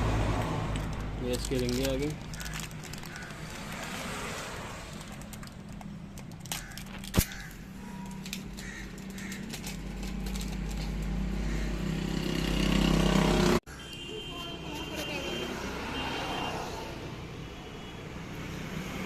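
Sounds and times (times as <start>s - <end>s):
vehicle engine running: 7.9s - 13.6s.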